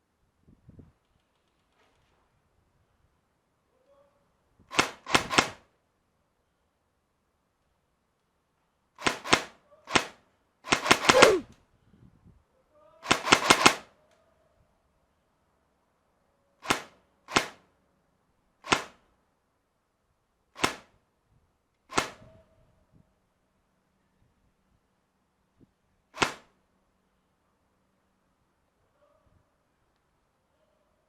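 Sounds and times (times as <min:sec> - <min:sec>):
airsoft gun firing: 0:10.7 - 0:11.4.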